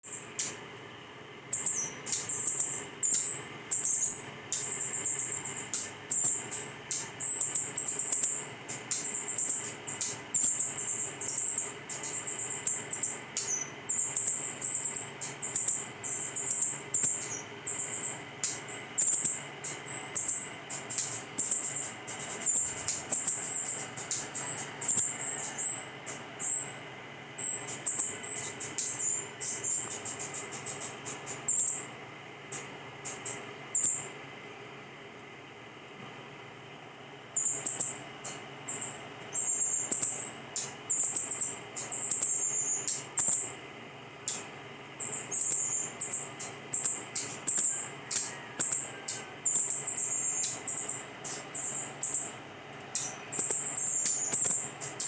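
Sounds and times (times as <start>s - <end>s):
sharp clicks: 52.9s - 55.0s.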